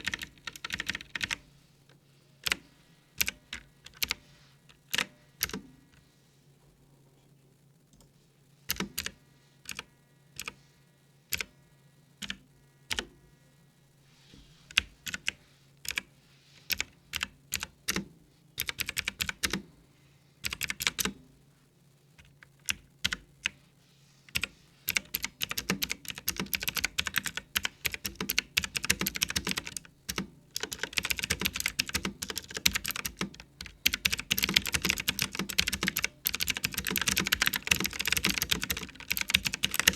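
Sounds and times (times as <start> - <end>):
clicky mechanical keyboard typing: 0.0 - 1.4, 3.2 - 4.2, 4.9 - 5.6, 8.7 - 10.6, 12.2 - 13.1, 14.7 - 16.1, 16.7 - 19.6, 20.4 - 21.2, 22.2 - 23.6, 24.3 - 39.9.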